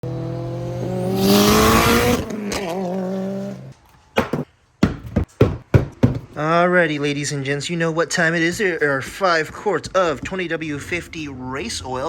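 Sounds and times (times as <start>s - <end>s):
car engine at high revs: 0.0s - 3.7s.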